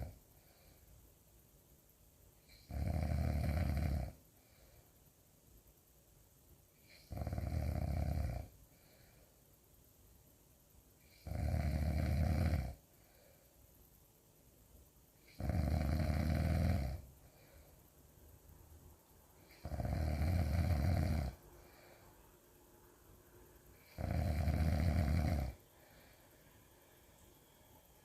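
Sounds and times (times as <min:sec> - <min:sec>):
quiet breaths: 0:00.0 - 0:28.0
loud deep snoring: 0:02.5 - 0:04.2, 0:06.9 - 0:08.5, 0:11.2 - 0:12.8, 0:15.3 - 0:17.1, 0:19.5 - 0:21.4, 0:23.8 - 0:25.6.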